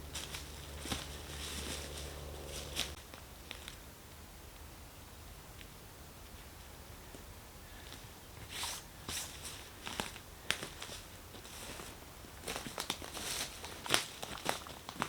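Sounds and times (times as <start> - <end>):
footsteps on forest floor: 0.0 - 3.0, 7.9 - 14.7.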